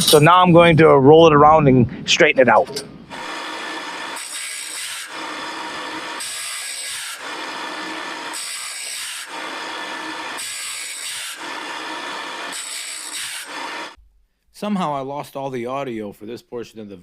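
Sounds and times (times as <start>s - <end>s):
rhythmic rasping strokes: 3.1s - 14.0s.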